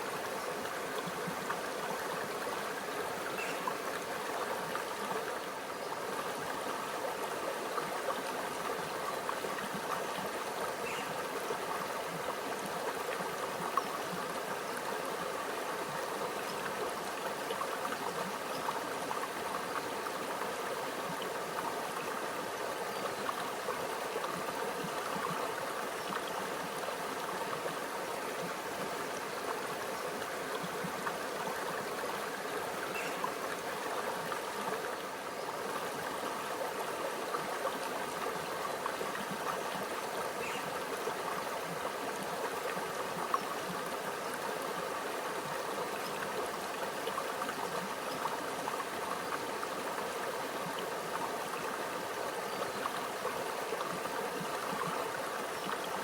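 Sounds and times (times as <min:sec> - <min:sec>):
stream babbling over rocks: 0:00.0 - 0:56.0.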